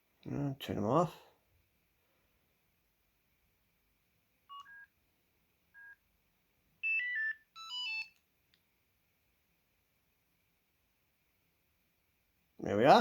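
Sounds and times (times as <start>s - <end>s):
short phone beeps: 4.5s - 4.9s, 6.8s - 8.2s.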